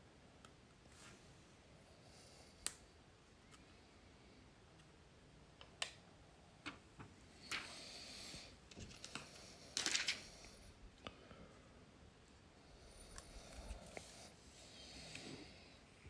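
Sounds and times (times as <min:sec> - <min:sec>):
plastic parts clicking and tapping: 0:08.7 - 0:10.2.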